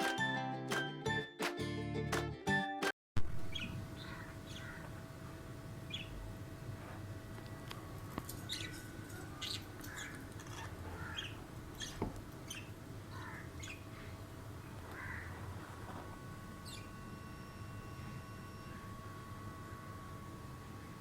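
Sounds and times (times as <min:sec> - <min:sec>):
faint steady hum: 0:03.2 - 0:21.0
budgerigars chirping and squawking: 0:03.4 - 0:04.9, 0:05.9 - 0:06.2, 0:08.4 - 0:14.1, 0:16.6 - 0:16.9.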